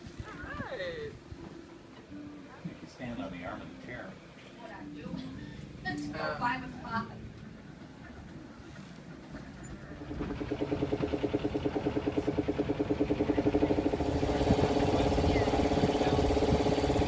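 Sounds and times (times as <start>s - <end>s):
boat engine pulsing: 5.0s - 17.0s.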